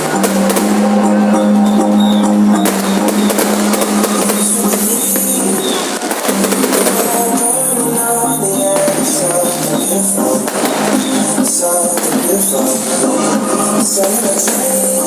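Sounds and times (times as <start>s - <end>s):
music with percussion: 0.0s - 5.4s.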